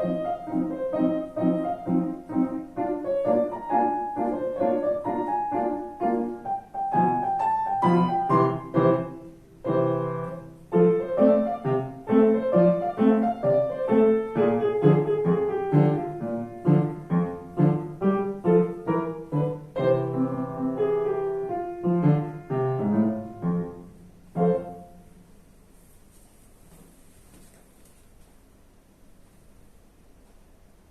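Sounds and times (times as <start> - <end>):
piano melody over chords: 0.0 - 25.4.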